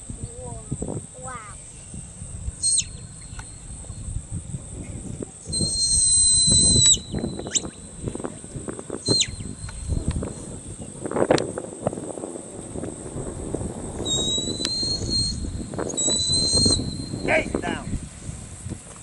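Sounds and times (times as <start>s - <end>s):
high whistle commands: 1.3s - 4.1s, 5.5s - 8.2s, 9.0s - 10.1s, 14.0s - 17.8s.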